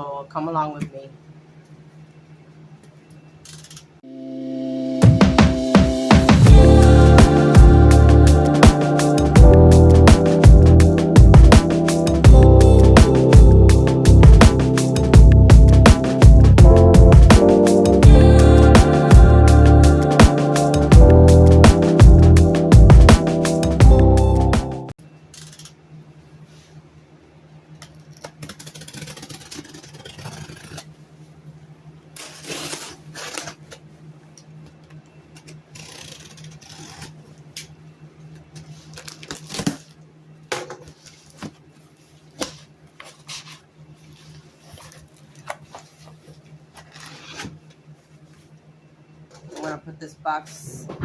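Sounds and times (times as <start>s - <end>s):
steady low hum: 4.0s - 25.0s.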